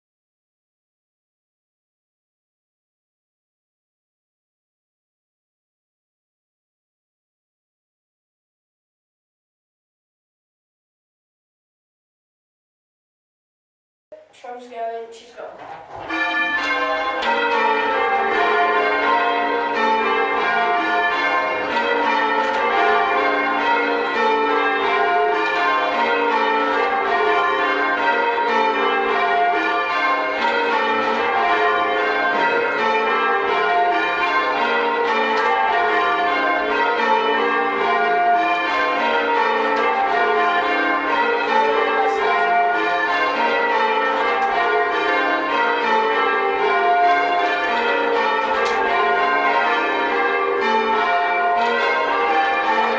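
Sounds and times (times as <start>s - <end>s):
church bells ringing: 14.5s - 52.9s
boomy tenor bell: 14.6s - 52.9s.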